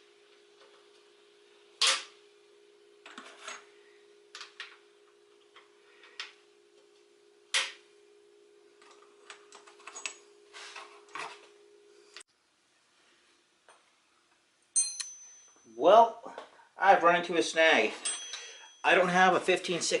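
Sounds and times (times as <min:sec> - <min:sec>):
steady hum: 0:00.0 - 0:12.2.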